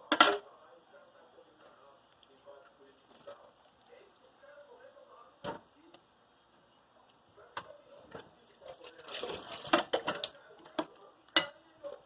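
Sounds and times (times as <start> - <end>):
dishes and utensils clinking: 8.1 - 12.0.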